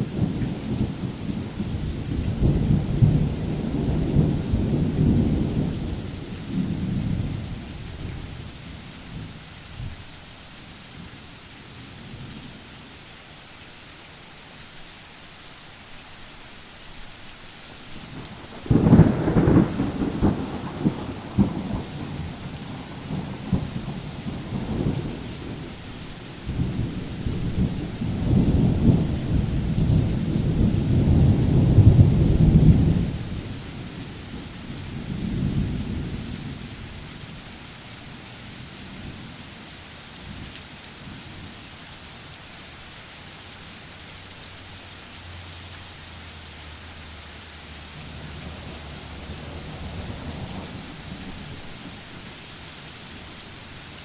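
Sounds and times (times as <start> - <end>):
rolling thunder: 0.0 - 8.5, 18.0 - 37.1, 48.0 - 52.0
steady rain: 0.0 - 54.0.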